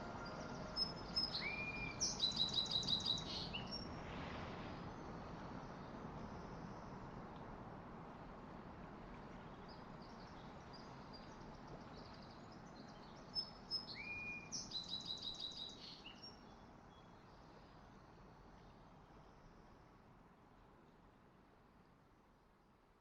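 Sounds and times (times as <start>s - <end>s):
songbird singing: 0.0s - 3.9s, 9.7s - 17.4s
faint outdoor hiss: 0.0s - 23.0s.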